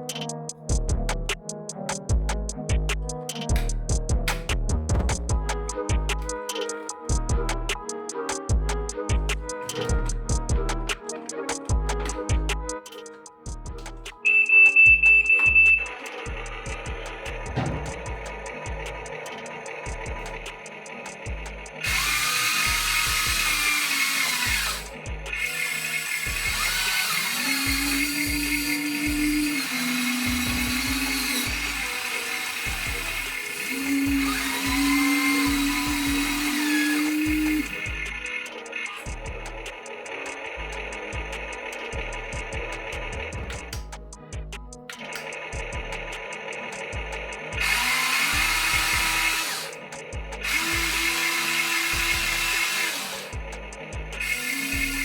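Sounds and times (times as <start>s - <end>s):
small electric motors whining: 14.3s - 43.2s, 45.0s - 55.0s.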